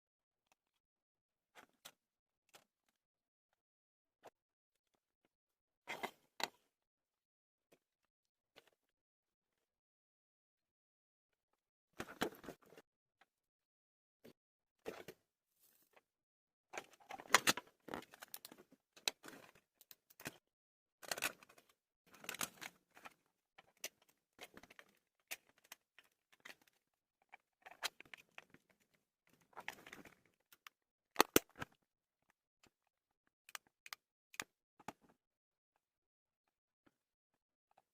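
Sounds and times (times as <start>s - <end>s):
clicks and rattles of torch parts: 21.0s - 31.7s.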